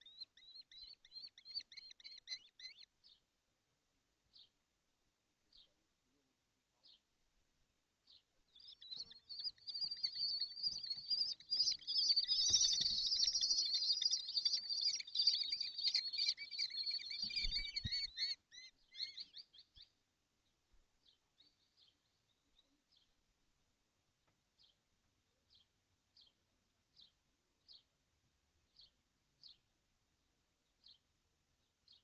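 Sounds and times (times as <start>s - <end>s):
bird chicks chirping: 0.0s - 3.2s, 8.1s - 20.0s.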